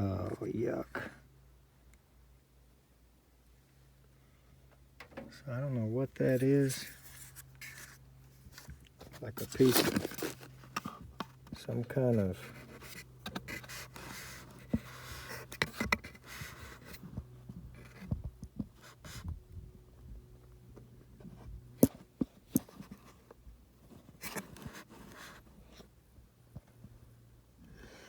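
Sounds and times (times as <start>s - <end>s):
faint low hum: 0.0s - 28.0s
scratching and scraping on metal: 6.3s - 17.1s.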